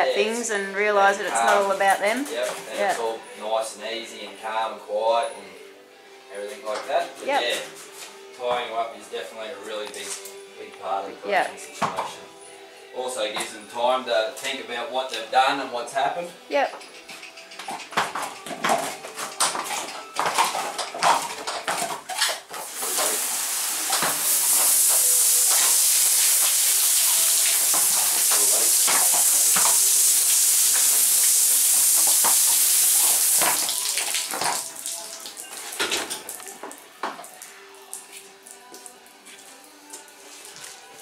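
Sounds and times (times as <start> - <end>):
hose spraying water: 22.2 - 38.2.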